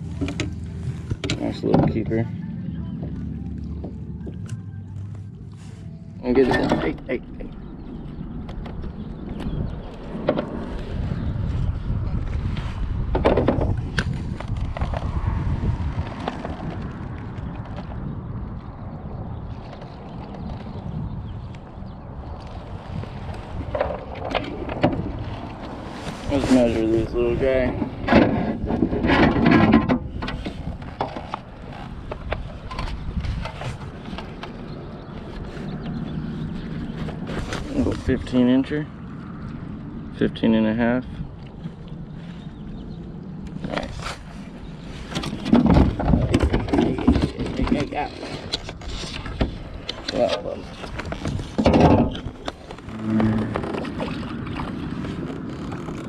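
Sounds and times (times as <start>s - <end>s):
wind rumbling on microphone: 0.0s - 56.0s
fish handling clicks and knocks: 0.1s - 2.0s.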